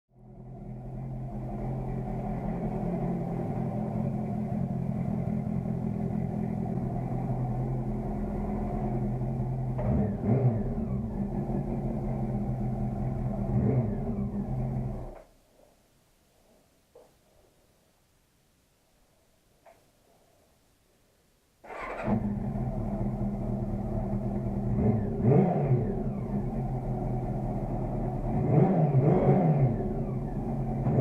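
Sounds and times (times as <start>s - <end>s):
motorcycle engine idling and revving: 0.1s - 15.2s, 21.6s - 31.0s.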